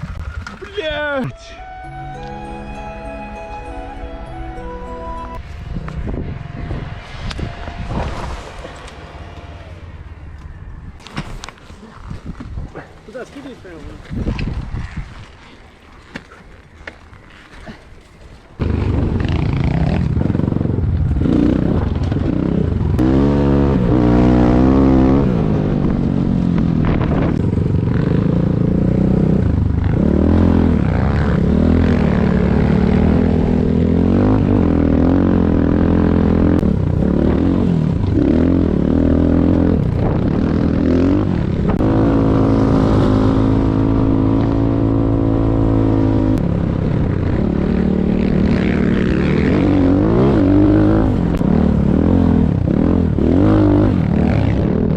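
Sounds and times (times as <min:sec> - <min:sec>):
dirt bike engine revving: 0:18.6 - 0:54.9.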